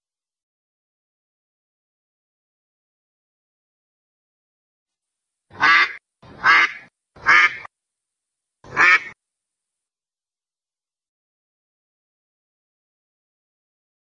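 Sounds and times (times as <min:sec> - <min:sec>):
duck quacking: 0:05.5 - 0:07.7, 0:08.7 - 0:09.2.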